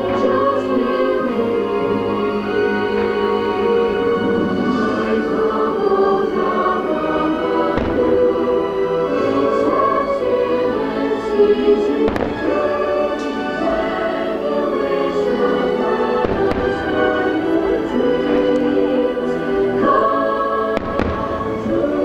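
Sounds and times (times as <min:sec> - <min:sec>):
choral and orchestral music: 0:00.0 - 0:22.0
fireworks bangs: 0:07.7 - 0:08.3, 0:12.0 - 0:12.7, 0:16.2 - 0:17.0, 0:20.8 - 0:21.5.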